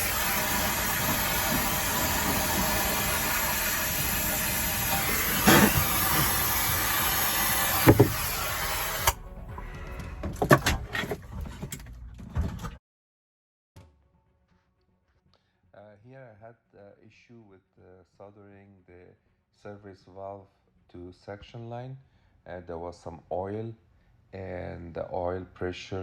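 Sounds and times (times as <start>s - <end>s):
torch flame hissing: 0.0s - 9.2s
sharp knocks: 7.4s - 8.4s.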